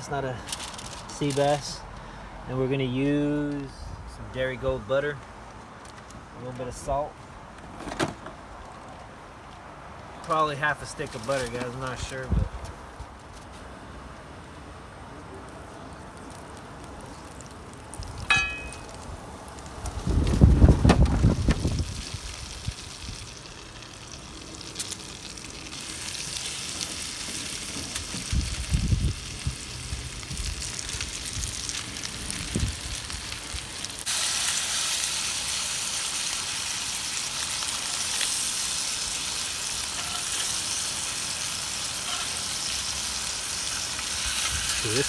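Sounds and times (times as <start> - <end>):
low bumps: 20.0 - 22.0
fish frying in a pan: 21.5 - 45.0.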